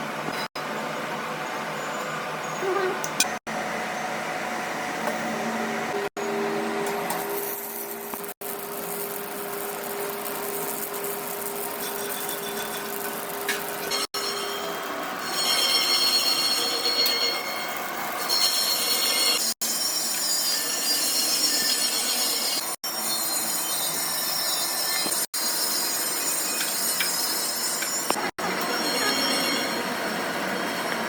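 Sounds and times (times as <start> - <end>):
metalworking machine noise: 0.0 - 31.0
high metal-on-metal squeal: 10.2 - 31.0.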